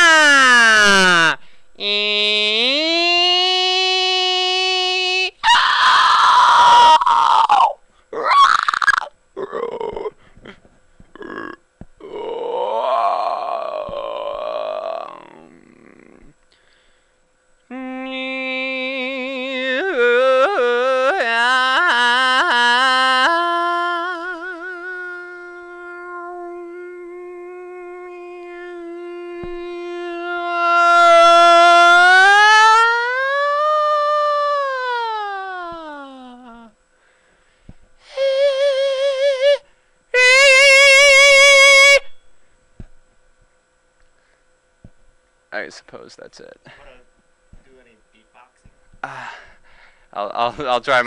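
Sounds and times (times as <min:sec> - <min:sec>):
person singing yodel-like: 0:00.0 - 0:10.2, 0:11.2 - 0:16.4, 0:17.7 - 0:36.8, 0:38.1 - 0:42.2.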